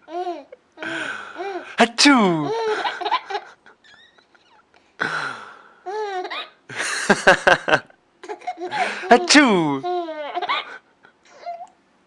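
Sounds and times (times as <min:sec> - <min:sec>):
baby laughing: 0:00.0 - 0:00.6, 0:02.4 - 0:04.6, 0:05.9 - 0:06.6, 0:08.2 - 0:11.7
baby squealing: 0:03.8 - 0:04.6, 0:06.2 - 0:06.6.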